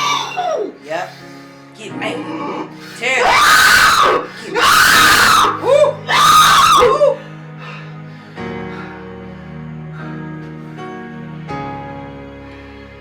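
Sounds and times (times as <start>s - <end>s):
person screaming: 0.0s - 0.7s, 2.8s - 7.2s.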